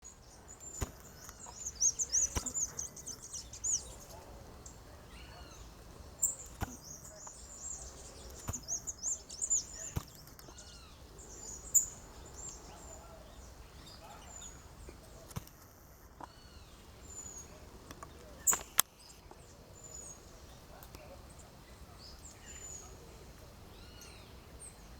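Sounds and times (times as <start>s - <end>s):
wild birds chirping: 0.0s - 24.9s
sharp clicks: 17.9s - 19.0s.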